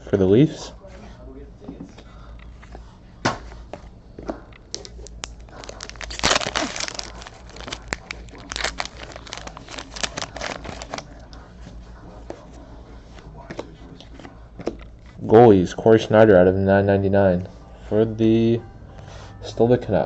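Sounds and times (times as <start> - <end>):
cards being handled: 4.7 - 11.2
foil wrapper crinkling and tearing: 4.7 - 11.2.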